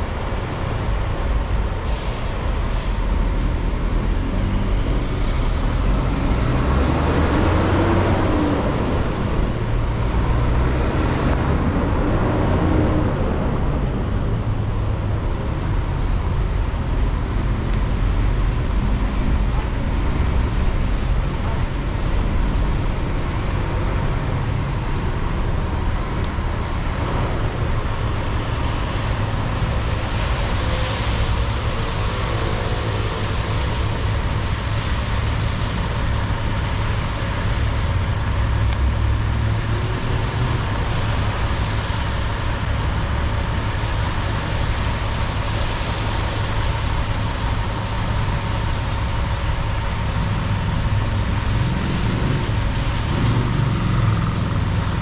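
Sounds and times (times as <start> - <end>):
car engine and road rumble: 0.0 - 55.0
tyre hiss on wet pavement: 0.1 - 11.4, 27.9 - 55.0.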